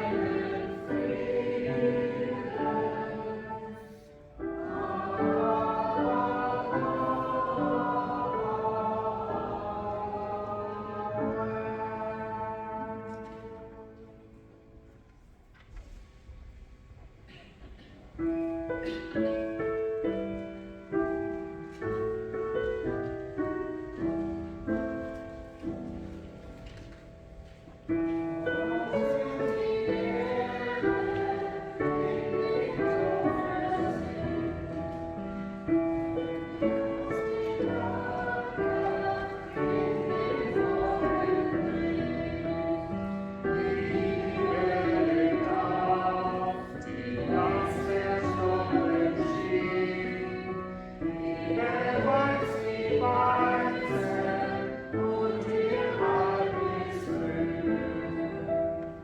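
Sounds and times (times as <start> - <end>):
choir singing: 0.0 - 14.5, 27.9 - 59.0.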